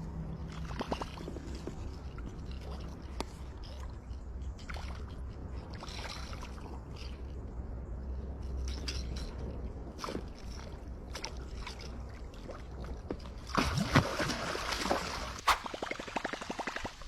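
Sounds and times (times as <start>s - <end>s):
water sloshing and splashing: 0.1s - 7.6s, 8.4s - 17.0s.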